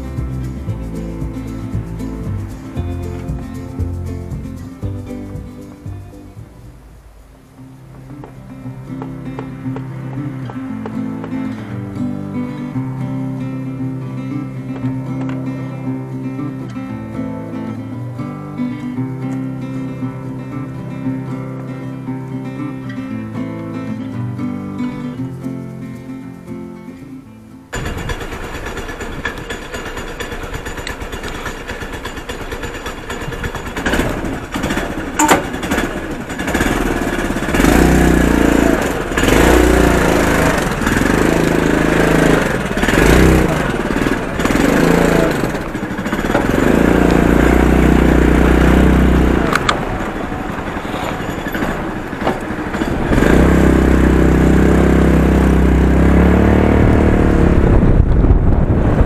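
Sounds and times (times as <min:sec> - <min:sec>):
scooter engine revving: 0:00.0 - 0:05.8, 0:27.8 - 0:58.9.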